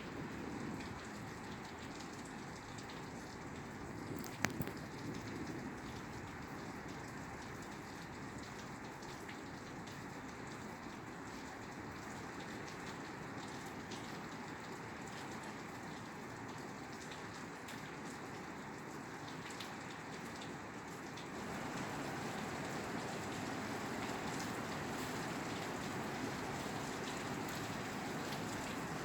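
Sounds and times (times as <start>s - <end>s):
rain on a roof: 0.0s - 29.0s.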